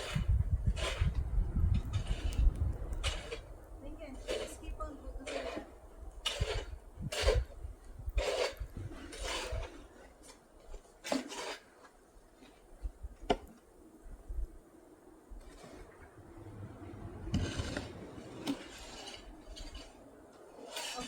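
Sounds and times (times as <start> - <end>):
snow shovel scraping snow: 0.0 - 1.2, 1.9 - 2.4, 3.0 - 3.5, 4.1 - 12.8, 15.4 - 15.9, 17.3 - 21.0.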